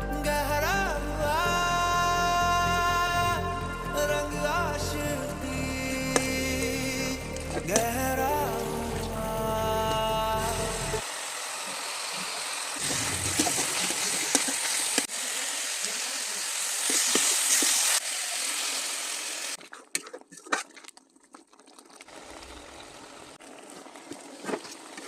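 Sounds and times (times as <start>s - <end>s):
food sizzling in a pan: 11.0s - 19.6s.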